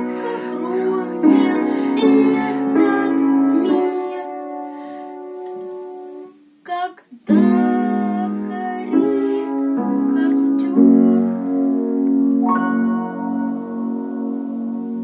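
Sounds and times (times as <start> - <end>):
child singing: 0.0 - 4.5, 6.6 - 11.5
piano chords: 0.0 - 6.4, 7.3 - 15.0.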